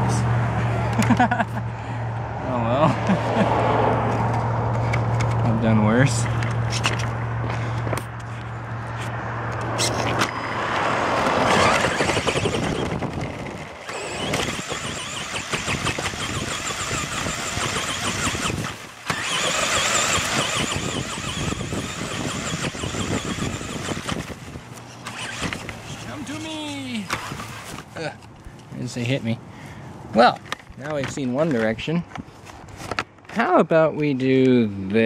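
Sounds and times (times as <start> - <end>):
electric motor and gearbox whine: 9.6 - 27.9.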